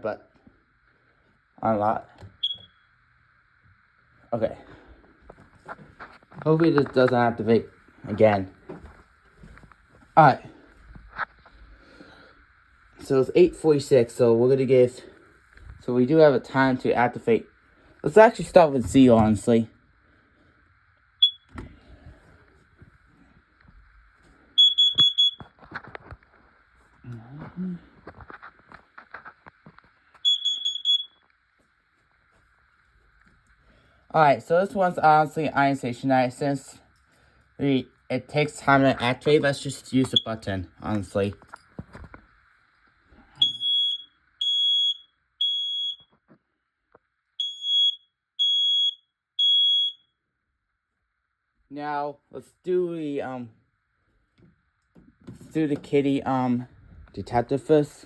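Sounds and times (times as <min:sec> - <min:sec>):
smoke alarm beeps: 0:02.3 - 0:03.0, 0:21.1 - 0:21.7, 0:24.5 - 0:25.6, 0:30.1 - 0:31.3, 0:40.0 - 0:40.5, 0:43.3 - 0:46.2, 0:47.4 - 0:50.2.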